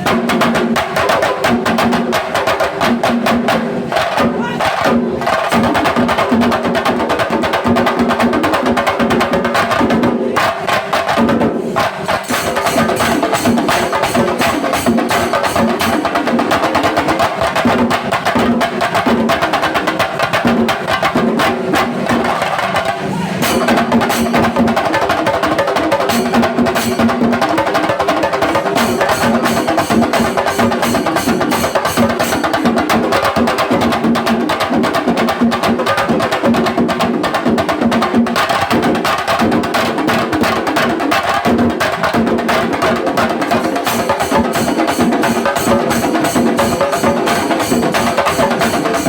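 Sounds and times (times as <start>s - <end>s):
drums beaten in fast rhythm: 0.0s - 49.0s
cymbals: 11.5s - 17.6s, 22.8s - 33.9s, 42.5s - 49.0s.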